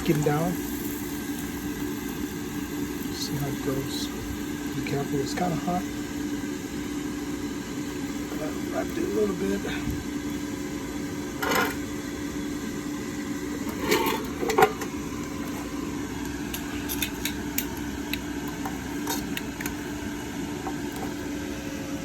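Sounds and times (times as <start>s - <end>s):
air fryer humming: 0.0s - 22.0s.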